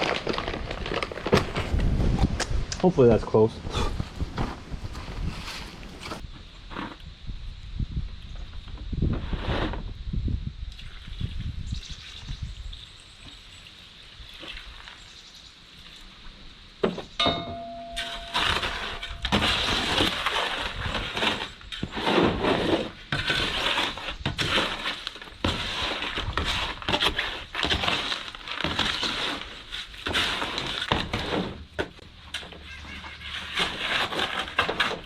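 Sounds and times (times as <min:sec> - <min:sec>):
sharp knock with metallic ring: 0:17.2 - 0:19.0
tool scraping concrete mix: 0:18.0 - 0:35.0.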